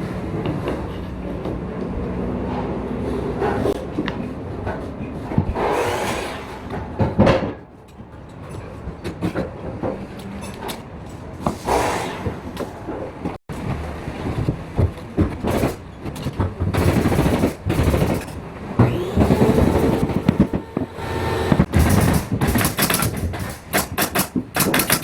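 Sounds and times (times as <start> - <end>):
carpentry knocks and clicks: 19.8 - 25.0.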